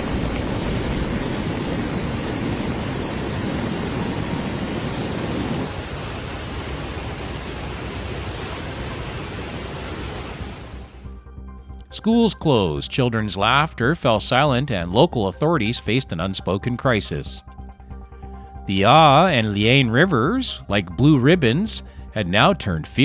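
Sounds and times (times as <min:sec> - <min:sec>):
rushing water: 0:00.0 - 0:11.0.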